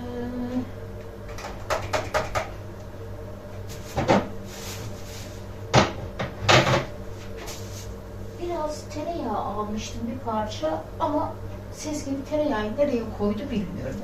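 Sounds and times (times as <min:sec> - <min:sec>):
steady low hum: 0:00.0 - 0:14.0
knocks on cupboard: 0:04.0 - 0:04.3, 0:05.7 - 0:06.9.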